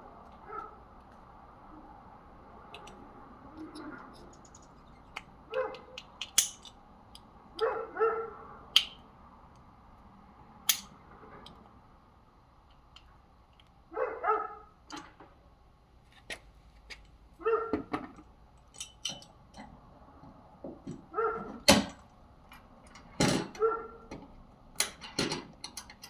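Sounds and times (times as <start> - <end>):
dog barking: 0.4 - 0.8, 5.5 - 6.0, 7.6 - 8.5, 13.9 - 14.7, 17.4 - 17.9, 21.1 - 21.6, 23.6 - 24.0
clicks and knocks of parts handled: 2.7 - 7.7, 8.7 - 9.7, 10.6 - 11.7, 17.8 - 19.8, 21.6 - 26.0.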